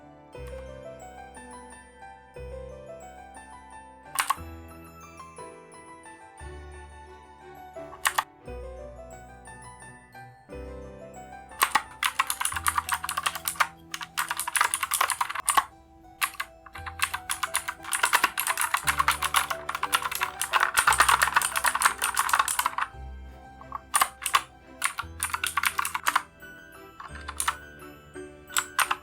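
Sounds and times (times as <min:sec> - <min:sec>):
background music: 0:00.0 - 0:29.0
clicky keyboard typing: 0:04.2 - 0:04.4, 0:07.9 - 0:08.3, 0:11.6 - 0:23.0, 0:23.6 - 0:26.3, 0:27.0 - 0:27.6, 0:28.5 - 0:29.0.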